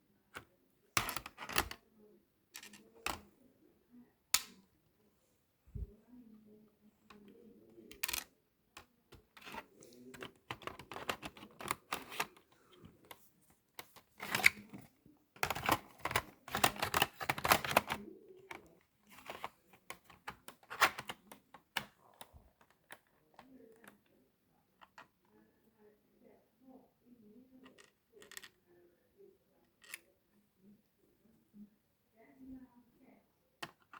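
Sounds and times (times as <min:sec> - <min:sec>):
computer parts clicking and rattling: 0:01.0 - 0:01.8, 0:10.2 - 0:12.4, 0:15.4 - 0:18.0.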